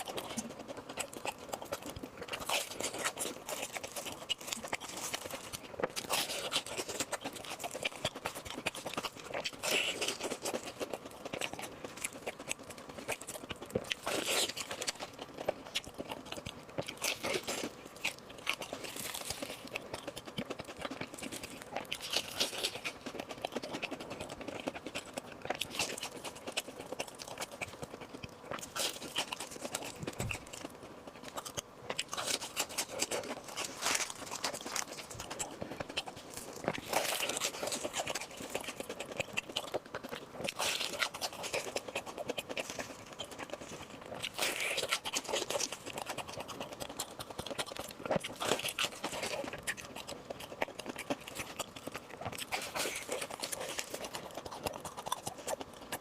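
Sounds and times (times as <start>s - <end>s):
crunchy bites and chewing: 0.0s - 56.0s.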